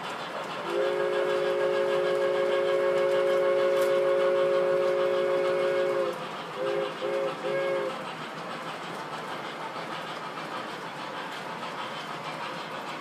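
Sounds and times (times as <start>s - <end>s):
model train running noise: 0.0s - 13.0s
model train chord whistle: 0.6s - 8.0s.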